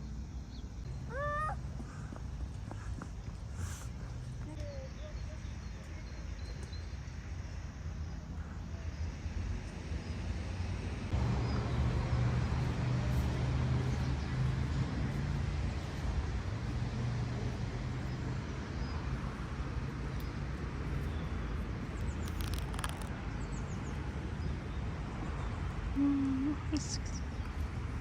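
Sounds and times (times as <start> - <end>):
outdoor noise: 0.0 - 28.0
engine humming: 9.7 - 19.9.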